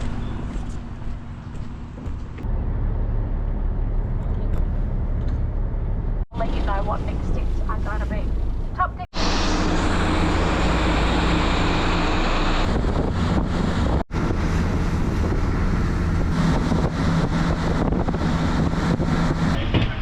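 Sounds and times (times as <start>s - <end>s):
boat engine drone: 0.0s - 20.0s
wind buffeting microphone: 9.1s - 20.0s.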